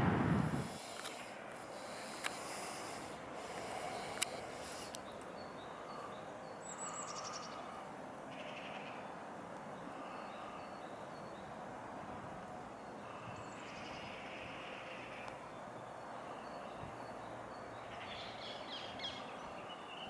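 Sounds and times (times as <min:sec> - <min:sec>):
steady background hiss: 0:00.0 - 0:20.0
small birds chirping: 0:00.8 - 0:11.7, 0:12.6 - 0:20.0
high rapid bird trill: 0:03.8 - 0:07.7.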